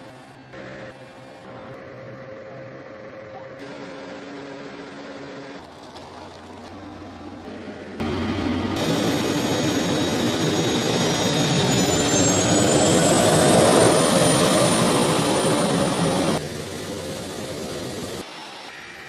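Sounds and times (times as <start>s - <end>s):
jet engines spooling up: 6.7s - 19.0s.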